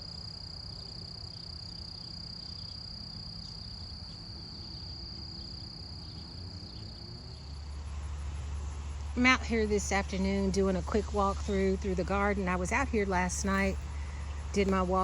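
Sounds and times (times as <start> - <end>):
high-pitched insect trill: 0.0 - 15.0.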